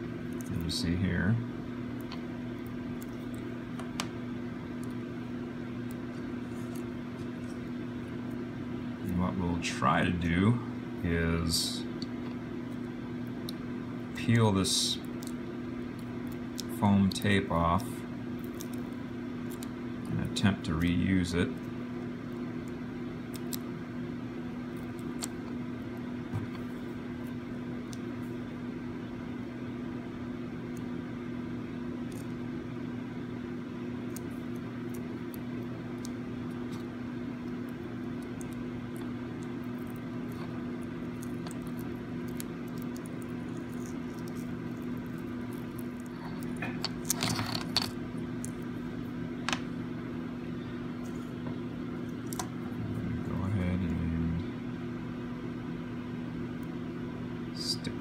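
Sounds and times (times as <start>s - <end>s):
low electrical fan hum: 0.0s - 58.0s
small parts clicking and rustling: 41.2s - 48.6s.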